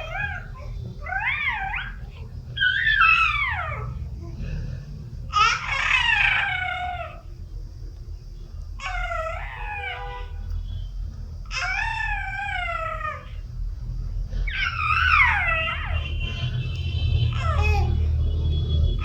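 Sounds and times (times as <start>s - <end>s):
baby squealing cries: 0.0s - 3.9s, 5.3s - 7.2s, 11.5s - 13.3s, 14.5s - 16.1s, 17.3s - 18.0s
steady low hum: 0.0s - 19.0s.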